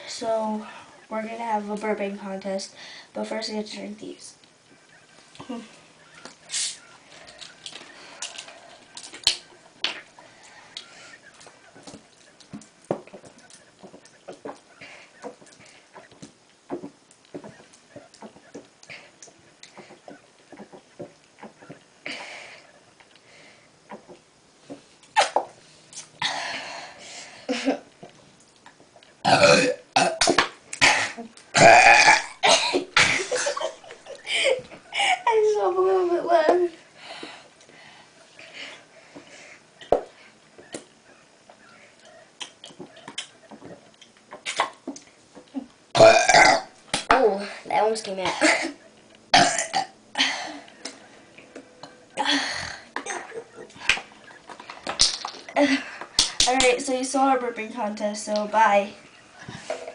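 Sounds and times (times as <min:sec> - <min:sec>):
breathy hiss: 0:02.4 - 0:03.2, 0:05.5 - 0:08.9, 0:22.0 - 0:23.8, 0:25.6 - 0:27.8, 0:36.7 - 0:40.4
person gulping a drink: 0:29.2 - 0:33.2, 0:46.0 - 0:46.7.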